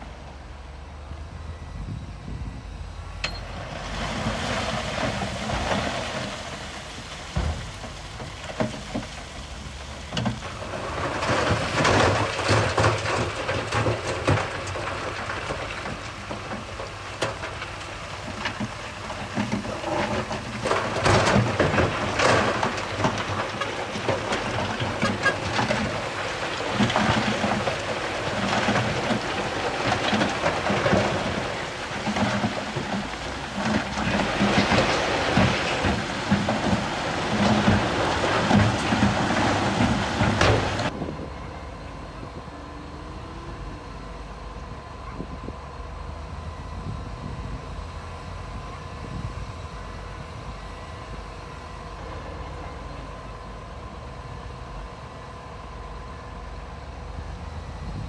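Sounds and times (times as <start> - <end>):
diesel engine running: 0.0 - 58.0
rock crunching and rattling: 3.8 - 41.1.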